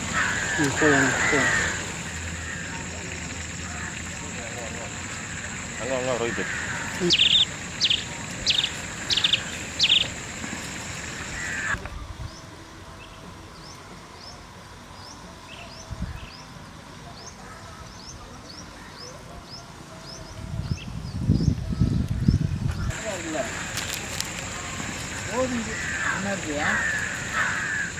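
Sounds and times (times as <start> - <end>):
loud short bird calls: 0.0 - 11.8, 22.8 - 27.9
steady high-pitched drone: 0.0 - 11.8
low rumbling noise: 0.0 - 12.4.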